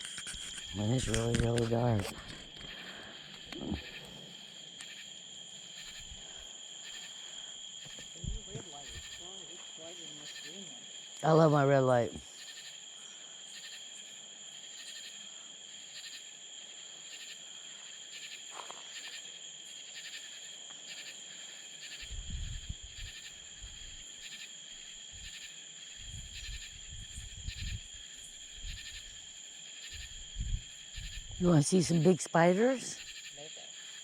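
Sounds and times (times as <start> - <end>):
insects trilling: 0.0 - 34.0
pulsing insect call: 0.0 - 34.0
low rumbling on microphone: 22.1 - 22.8.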